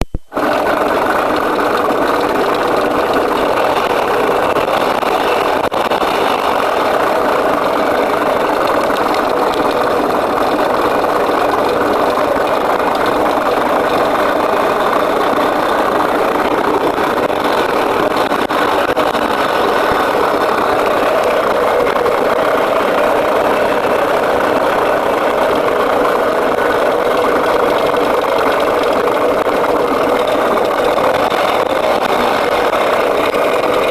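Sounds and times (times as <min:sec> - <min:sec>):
engine idling with a rattle: 0:00.3 - 0:33.9.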